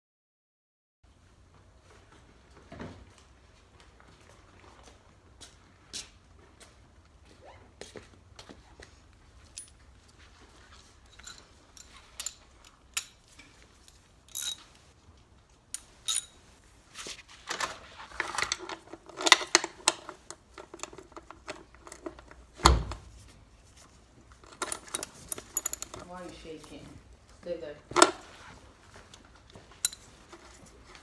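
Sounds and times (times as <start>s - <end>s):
metal hand tools clattering: 11.1s - 14.7s, 15.8s - 16.4s, 24.4s - 26.2s.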